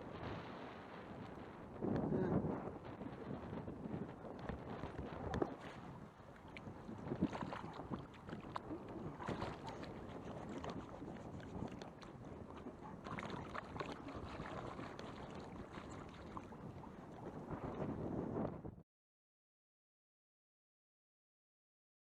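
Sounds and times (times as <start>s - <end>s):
strong wind gusts on microphone: 0.0s - 18.8s.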